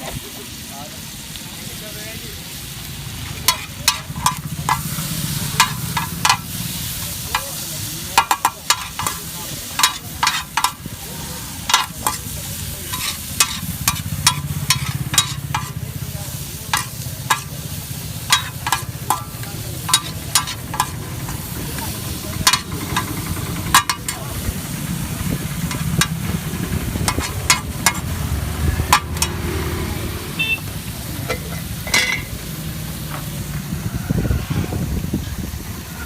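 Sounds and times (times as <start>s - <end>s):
frying sizzle: 0.0s - 36.0s
metal spoon clinking on pan: 3.4s - 6.6s, 7.3s - 10.9s, 11.7s - 15.8s, 16.6s - 17.6s, 18.2s - 24.4s, 25.6s - 26.3s, 27.0s - 28.1s, 28.9s - 29.4s.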